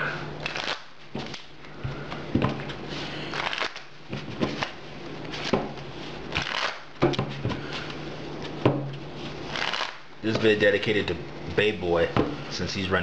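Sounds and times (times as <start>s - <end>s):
trading cards shuffling: 0.4s - 8.6s, 9.2s - 10.6s.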